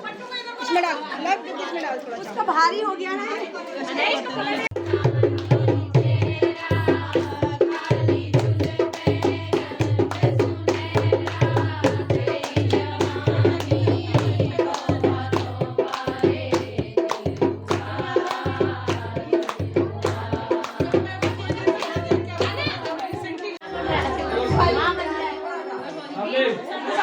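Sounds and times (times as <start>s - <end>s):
fast drum beat: 4.7s - 25.4s
heavy pounding bass: 23.6s - 25.4s
person singing: 23.6s - 26.0s.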